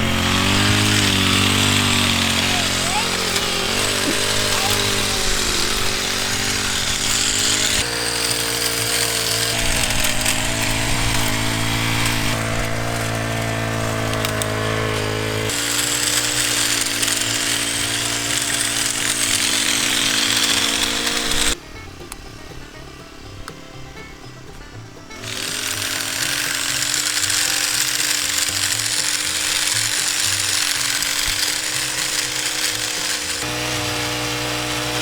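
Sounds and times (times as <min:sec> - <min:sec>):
small two-stroke engine running: 0:00.0 - 0:35.0.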